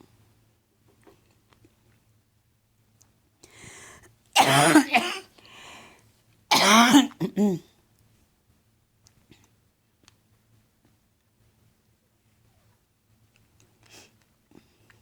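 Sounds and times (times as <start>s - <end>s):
breath in: 3.4s - 4.1s
woman coughing: 4.4s - 5.3s, 6.5s - 7.7s.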